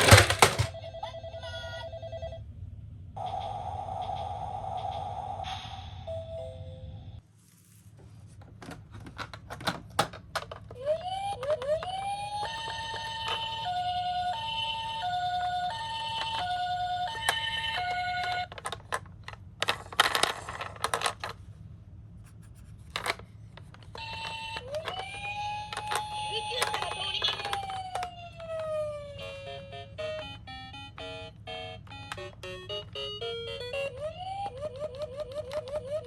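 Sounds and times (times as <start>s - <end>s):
plastic toy cars clicking: 0.0s - 0.8s, 8.4s - 21.4s, 22.9s - 28.8s, 31.8s - 36.0s
toy siren hi-lo wail: 3.2s - 6.9s, 10.8s - 18.6s, 24.0s - 36.0s.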